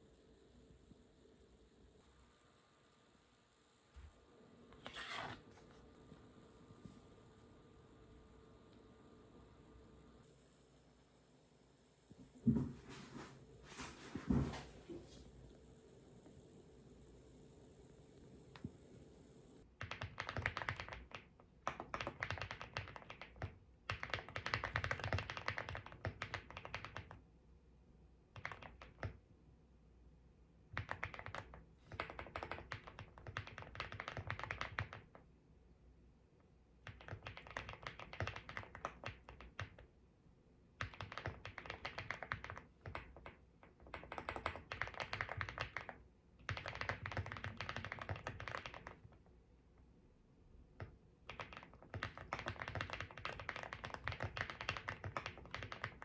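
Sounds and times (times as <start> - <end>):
fast mechanical keyboard typing: 19.7 - 27.2, 28.3 - 29.2, 30.7 - 35.2, 36.8 - 39.8, 40.8 - 49.1, 51.2 - 56.0.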